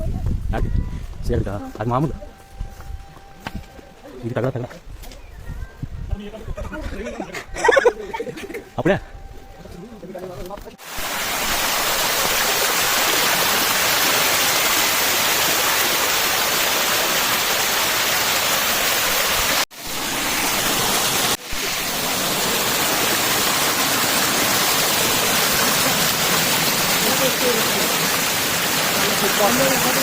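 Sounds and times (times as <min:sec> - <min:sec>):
rush of falling water: 0:10.8 - 0:30.0.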